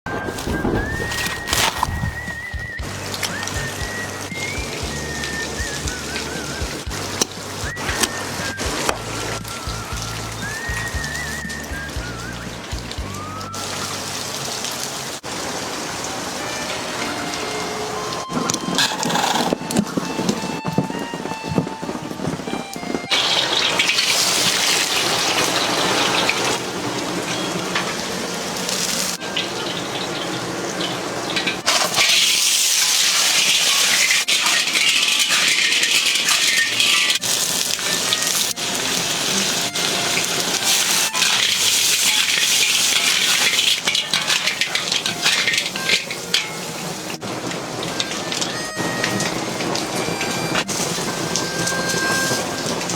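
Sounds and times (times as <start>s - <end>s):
splashing water hiss: 0.2s - 52.9s.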